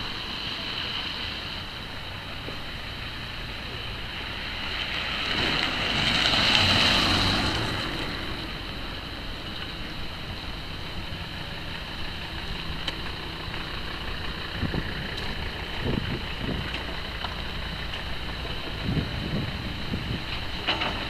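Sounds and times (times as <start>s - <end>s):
steady background noise: 0.0s - 21.0s
motor vehicle passing: 3.0s - 9.4s.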